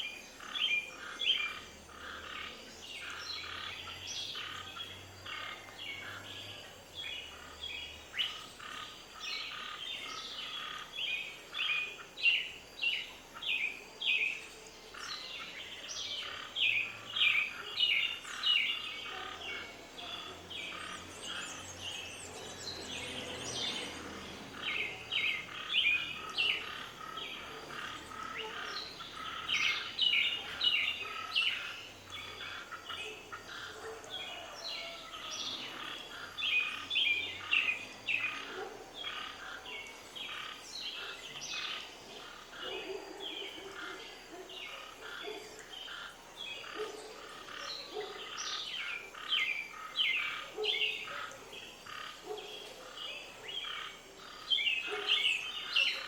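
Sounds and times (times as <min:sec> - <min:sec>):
birds chirping: 0:00.0 - 0:56.0.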